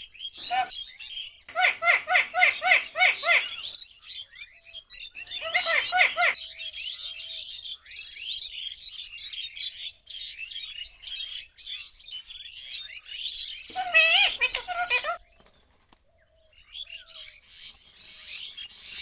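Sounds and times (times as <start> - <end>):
parakeet chirping: 5.4 - 6.4, 13.7 - 15.2.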